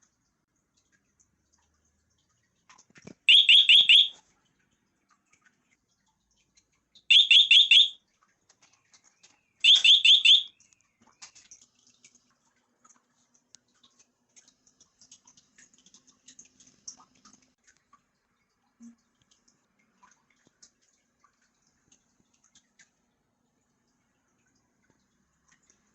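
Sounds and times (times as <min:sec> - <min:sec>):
alarm beeping high-pitched: 0:03.3 - 0:04.1, 0:07.1 - 0:08.0, 0:09.6 - 0:10.5.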